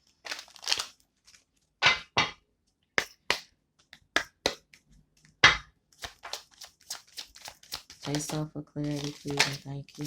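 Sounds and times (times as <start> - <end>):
cards being shuffled: 6.0 - 10.0.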